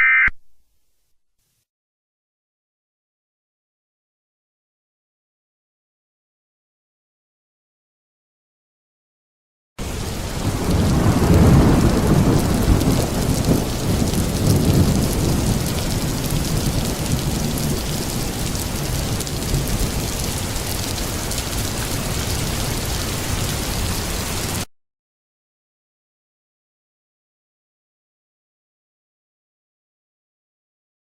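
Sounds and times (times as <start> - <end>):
thunder rumbling: 9.8 - 24.6
heavy rain: 9.8 - 24.7.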